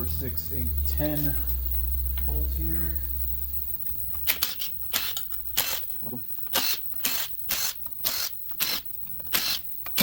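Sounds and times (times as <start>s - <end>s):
hand ratchet clicking: 4.2s - 10.0s.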